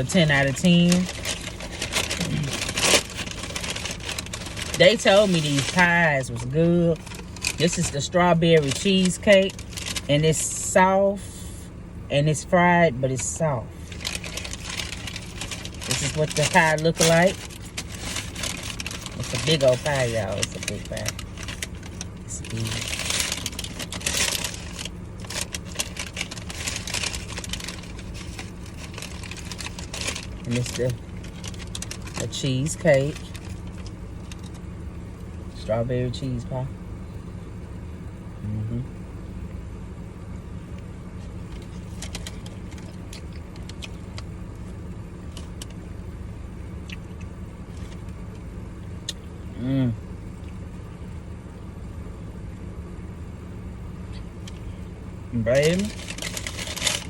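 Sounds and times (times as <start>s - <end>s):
food wrapper rustling: 0.0s - 10.1s, 13.8s - 34.6s, 41.5s - 44.2s, 55.6s - 57.0s
car engine idling: 0.0s - 57.0s
steady low hum: 0.0s - 57.0s.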